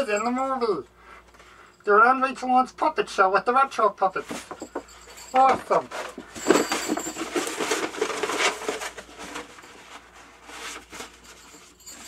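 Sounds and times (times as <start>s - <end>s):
paper poster rustling: 5.4s - 12.0s.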